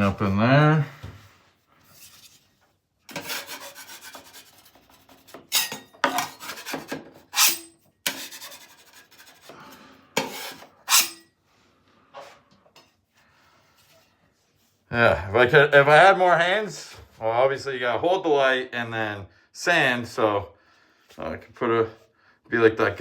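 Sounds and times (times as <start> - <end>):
sanding drywall by hand: 3.2 - 5.5, 6.4 - 9.5.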